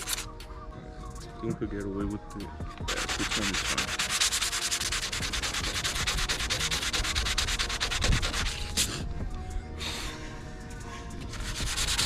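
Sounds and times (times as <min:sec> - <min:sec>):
sandpaper scrubbing painted metal: 0:02.9 - 0:09.0, 0:11.3 - 0:12.0.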